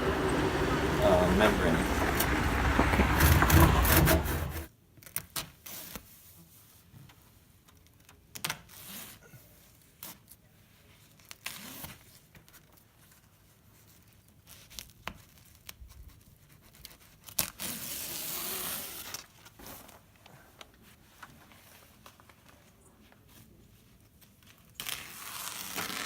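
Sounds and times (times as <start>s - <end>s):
handling clicks and knocks: 0.0s - 4.7s
rubber membrane tearing: 11.2s - 12.6s, 14.5s - 19.9s, 24.4s - 26.0s.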